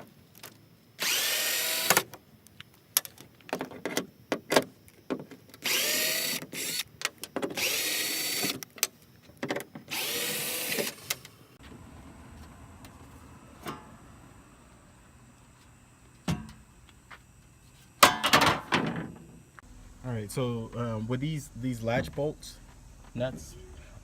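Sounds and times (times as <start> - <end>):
power drill whining: 1.0 - 2.0, 5.6 - 6.9, 7.5 - 8.6, 9.9 - 11.3.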